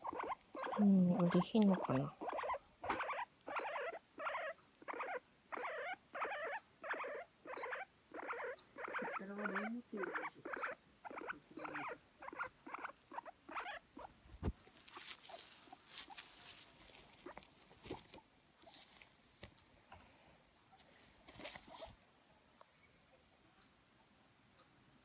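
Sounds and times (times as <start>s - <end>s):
guinea pig calling: 0.0s - 14.2s, 14.8s - 18.9s
rustling: 11.6s - 19.7s, 20.7s - 22.0s.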